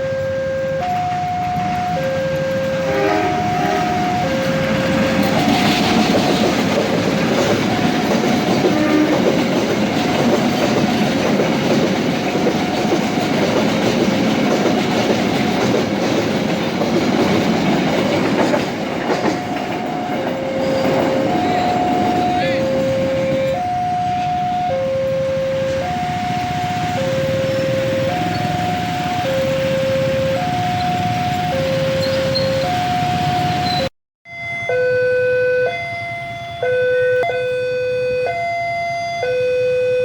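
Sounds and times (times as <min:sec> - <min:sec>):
two-tone crossing alarm: 0:00.0 - 0:40.0
train wheels clattering on rails: 0:00.8 - 0:24.4.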